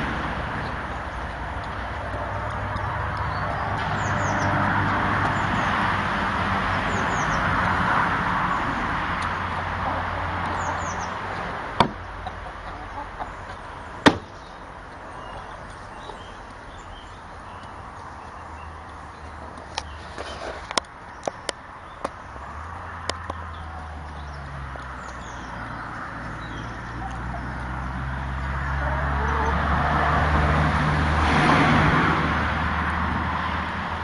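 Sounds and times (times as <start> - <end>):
birds chirping: 0.0 - 30.1
sharp knocks: 11.8 - 12.4, 14.0 - 14.4.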